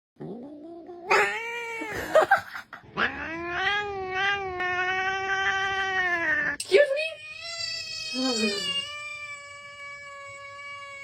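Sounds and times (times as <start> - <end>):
cat yowling: 1.0 - 2.1, 7.2 - 11.0.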